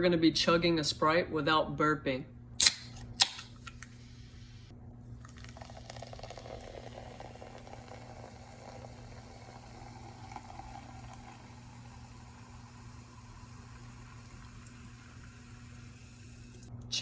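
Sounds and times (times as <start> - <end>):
soda fizzing: 5.2 - 16.7.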